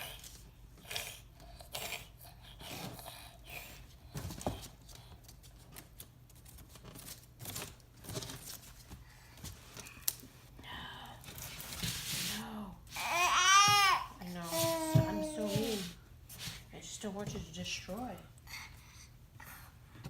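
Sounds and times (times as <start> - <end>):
basket scratching and crackling: 4.2 - 10.1, 11.3 - 16.7.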